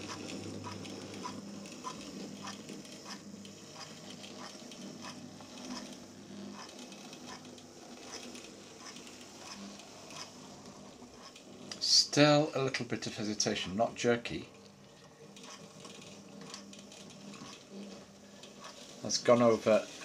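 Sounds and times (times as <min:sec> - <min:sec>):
model train motor humming: 0:00.0 - 0:20.0.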